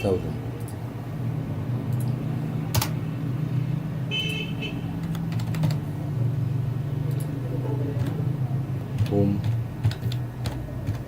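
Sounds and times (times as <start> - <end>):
computer keyboard keystrokes: 1.9 - 3.0, 5.0 - 5.8, 7.1 - 7.4, 8.0 - 8.2, 8.9 - 11.0.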